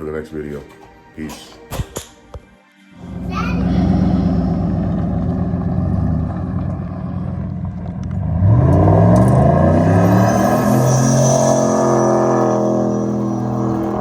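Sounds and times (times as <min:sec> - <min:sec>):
vehicle engine revving: 0:03.0 - 0:14.0.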